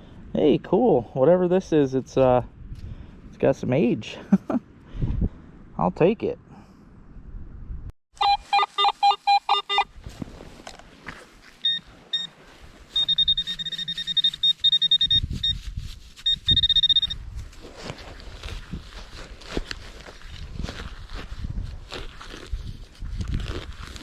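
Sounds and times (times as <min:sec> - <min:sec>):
metal detector beeping: 0:08.2 - 0:09.9, 0:11.6 - 0:17.3.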